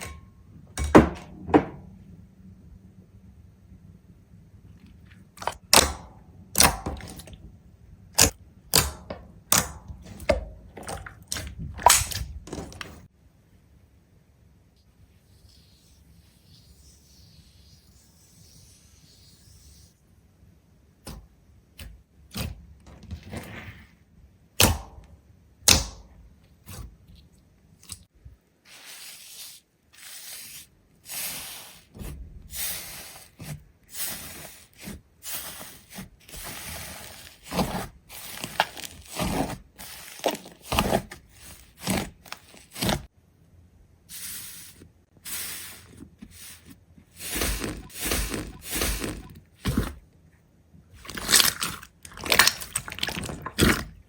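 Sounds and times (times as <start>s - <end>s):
sharp cracks and crunching: 51.0s - 54.0s.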